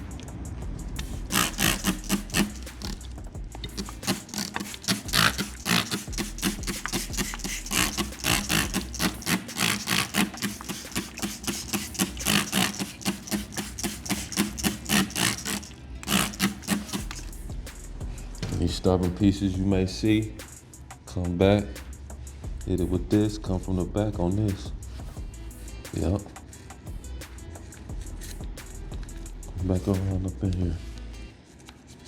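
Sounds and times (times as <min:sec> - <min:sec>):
faint background music: 0:00.0 - 0:32.0
spray bottle squirting: 0:01.0 - 0:17.4.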